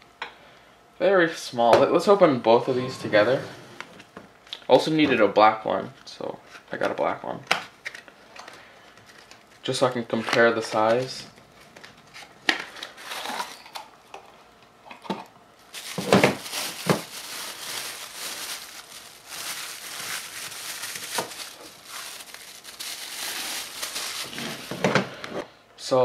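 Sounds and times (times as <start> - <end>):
plastic packaging crinkling: 15.6 - 25.1.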